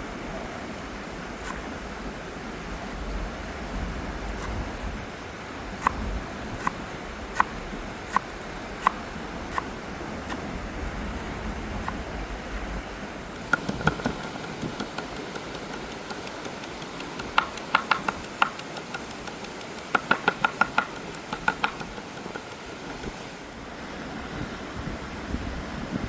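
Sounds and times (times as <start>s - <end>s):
outdoor background rumble: 0.0s - 26.0s
cooking utensils tapping: 13.4s - 23.2s.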